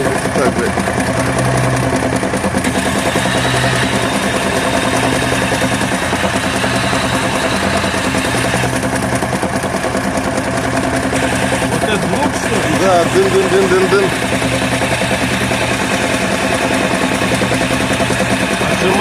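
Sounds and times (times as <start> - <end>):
car engine idling with rapid knocking: 0.0 - 19.0.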